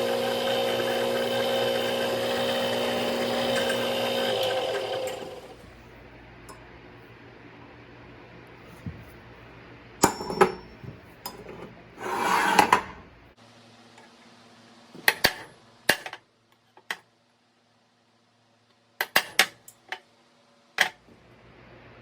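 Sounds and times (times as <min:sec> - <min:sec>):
metal scraping rasp: 0:12.0 - 0:12.9.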